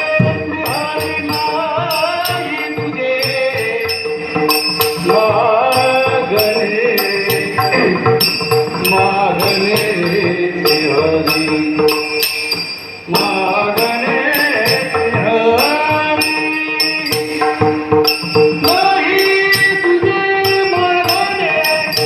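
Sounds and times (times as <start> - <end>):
devotional singing: 0.0 - 12.3, 13.1 - 17.4
hand cymbals struck: 0.0 - 22.0.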